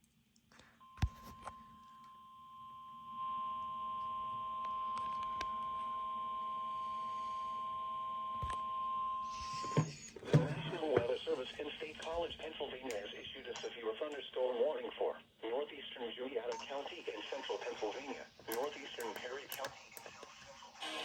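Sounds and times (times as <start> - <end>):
sharp clicks: 18.4 - 20.4.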